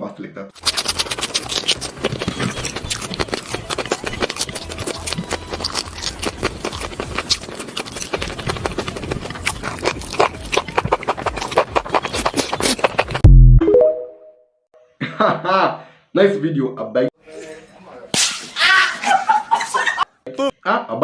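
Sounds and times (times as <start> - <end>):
wet chewing and lip-smacking: 0.6 - 13.3.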